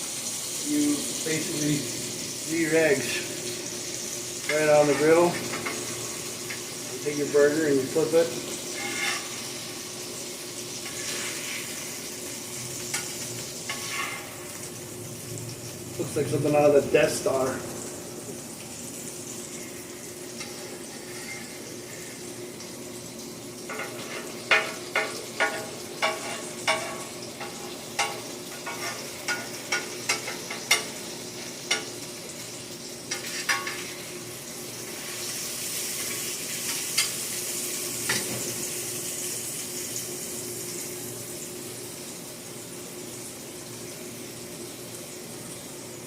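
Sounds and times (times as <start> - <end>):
food sizzling on griddle: 0.0 - 46.0
utensil clacking on griddle: 8.7 - 9.3, 12.8 - 14.4, 20.4 - 21.6, 23.7 - 32.1, 33.1 - 34.0.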